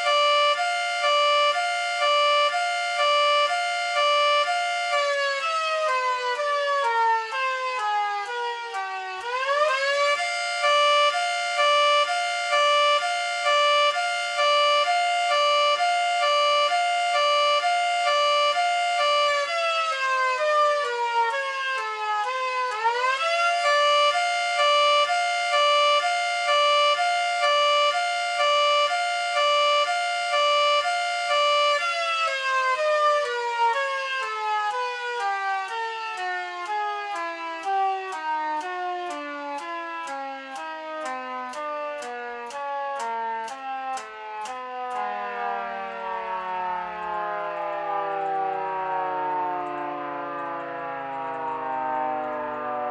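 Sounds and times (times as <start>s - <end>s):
undulating three-tone siren: 0.0s - 52.9s.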